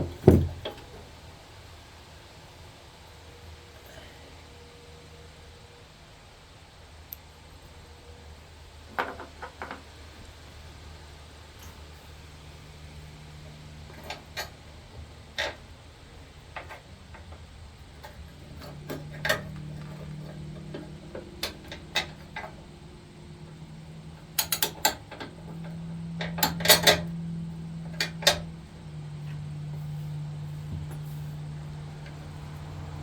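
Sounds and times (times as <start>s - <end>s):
faint steady hum: 0.0s - 33.0s
metal parts clinking: 24.4s - 27.1s.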